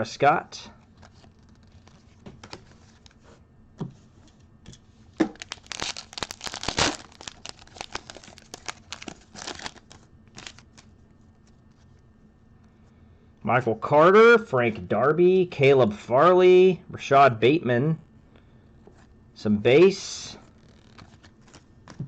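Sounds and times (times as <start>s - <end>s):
wrapper tearing and crinkling: 1.0s - 3.2s, 5.3s - 10.9s.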